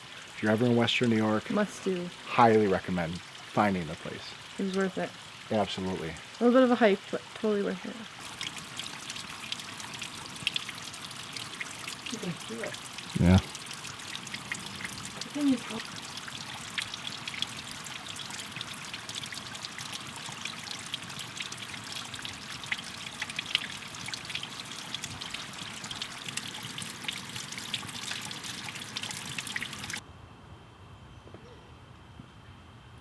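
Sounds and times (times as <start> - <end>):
waterfall splashing onto rock: 8.2 - 30.0.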